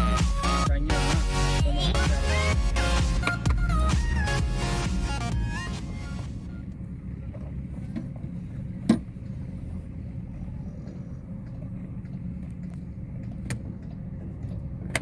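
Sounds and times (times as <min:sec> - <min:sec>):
low mechanical hum: 0:04.9 - 0:15.0.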